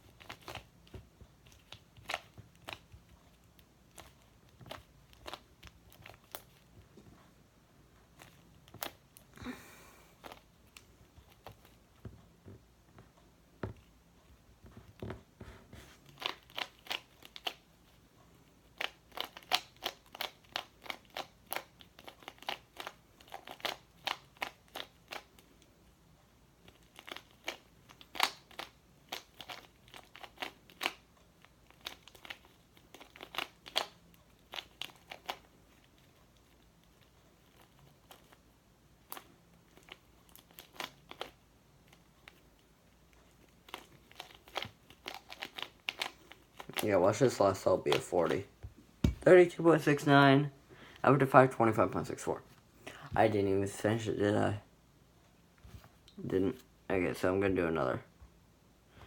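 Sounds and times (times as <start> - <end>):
speed cube plastic clicks: 43.7 - 46.8.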